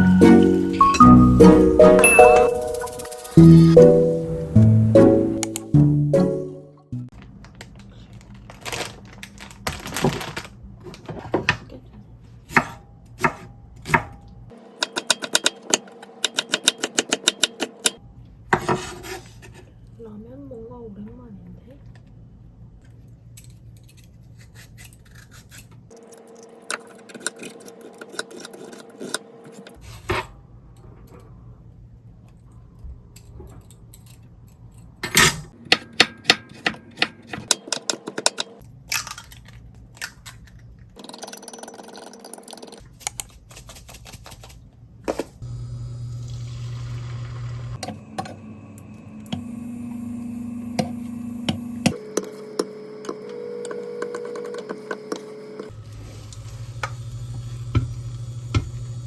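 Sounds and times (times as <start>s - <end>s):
utensils and dishes clinking: 0.0s - 4.1s.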